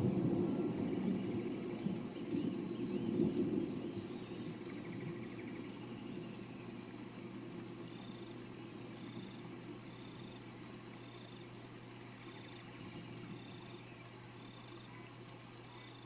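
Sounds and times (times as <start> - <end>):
low roll of thunder: 0.0 - 8.2
high insect drone: 0.0 - 16.0
small birds chirping: 0.2 - 16.0.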